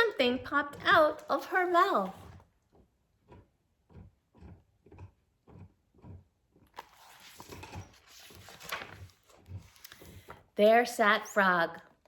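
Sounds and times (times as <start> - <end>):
paper page turning: 6.8 - 10.4.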